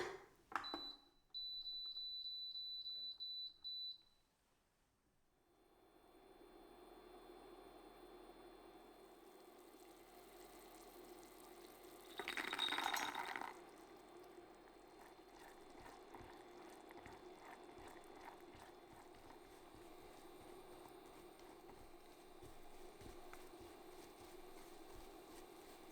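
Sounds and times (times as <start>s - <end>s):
clinking with ringing note: 12.1s - 13.5s.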